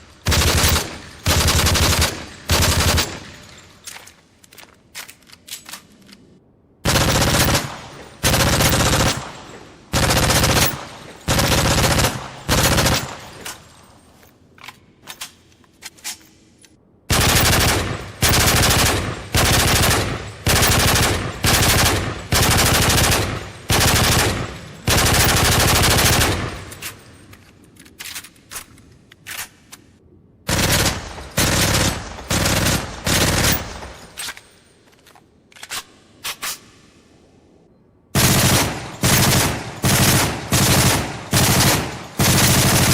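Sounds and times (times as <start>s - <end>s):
automatic gunfire bursts: 6.9s - 9.2s, 9.9s - 13.2s, 17.1s - 26.6s, 30.5s - 33.9s, 38.2s - 42.9s.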